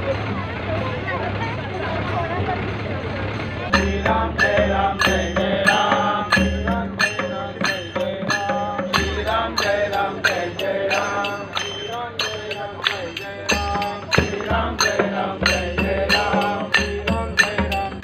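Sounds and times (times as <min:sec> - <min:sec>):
drums beating: 0:03.4 - 0:18.0
chanted melody: 0:03.7 - 0:18.0.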